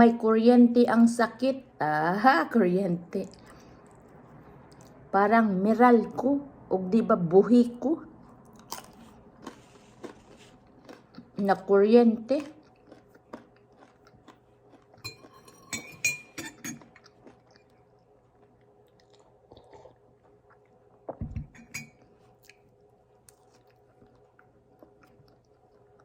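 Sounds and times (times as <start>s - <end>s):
chewing and crunching food: 3.2s - 5.0s, 8.2s - 21.2s, 21.9s - 26.0s.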